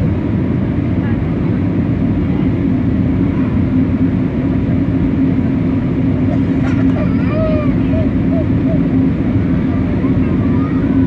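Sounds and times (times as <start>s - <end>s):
jet engine drone in cabin: 0.0s - 11.0s
faint voices: 6.2s - 11.0s.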